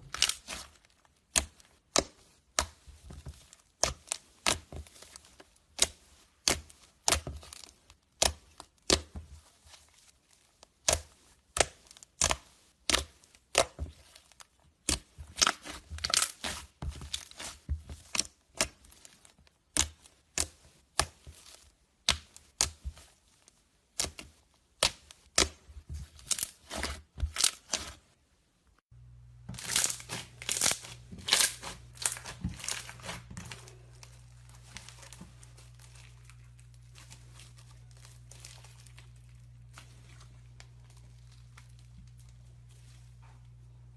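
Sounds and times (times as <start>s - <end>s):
low steady hum: 28.9s - 43.9s
slime crackling: 29.3s - 43.2s.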